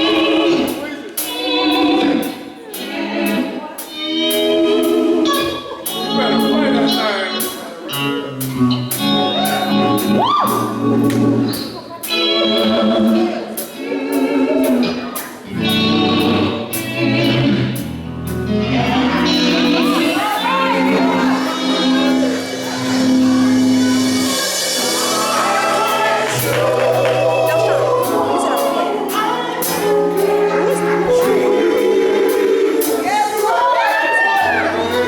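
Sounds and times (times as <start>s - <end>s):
band playing: 0.0s - 35.0s
voices singing in harmony: 0.0s - 35.0s.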